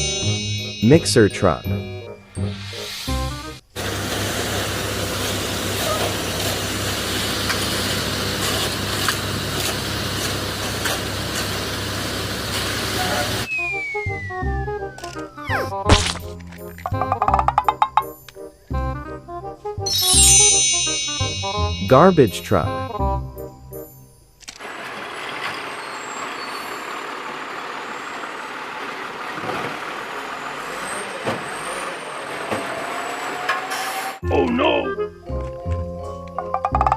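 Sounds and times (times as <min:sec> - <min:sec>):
plinking notes: 0:00.0 - 0:02.3, 0:19.8 - 0:24.0
garbage truck running with hiss: 0:00.0 - 0:16.4, 0:24.6 - 0:34.3
falling whistle-like glide: 0:13.4 - 0:15.8
vehicle engine rumbling: 0:24.5 - 0:33.3.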